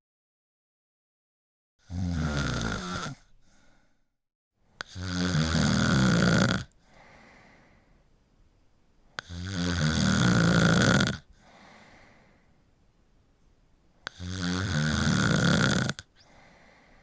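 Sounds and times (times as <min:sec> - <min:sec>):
person snoring: 0:01.8 - 0:03.3, 0:04.8 - 0:07.1, 0:09.2 - 0:12.2, 0:14.0 - 0:17.0
quiet breath: 0:03.1 - 0:05.0, 0:06.6 - 0:08.3, 0:11.2 - 0:14.3, 0:15.9 - 0:17.0.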